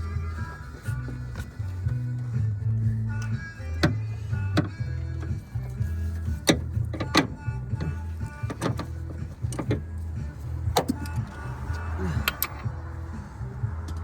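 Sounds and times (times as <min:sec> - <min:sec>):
music with bass beat: 0:00.0 - 0:14.0
sharp clicks and knocks: 0:06.4 - 0:09.9, 0:10.7 - 0:11.3.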